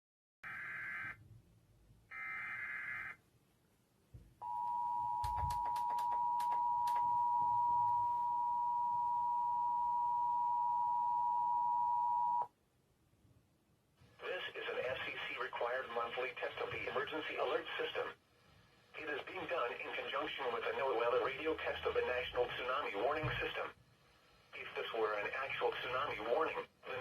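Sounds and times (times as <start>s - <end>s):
sharp clicks: 5.2s - 7.1s.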